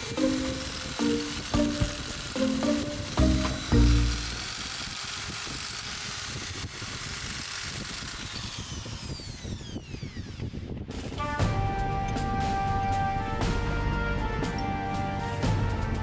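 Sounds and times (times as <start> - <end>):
brush cutter engine running: 0.0 - 12.1.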